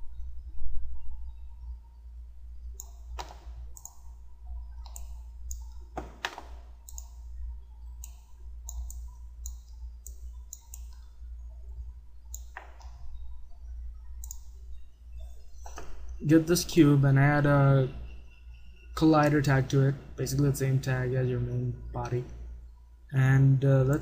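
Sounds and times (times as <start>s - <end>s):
steady low hum: 0.0s - 24.0s
computer mouse clicking: 2.8s - 4.1s, 4.7s - 7.3s, 8.0s - 11.2s, 12.2s - 13.3s, 14.1s - 14.6s.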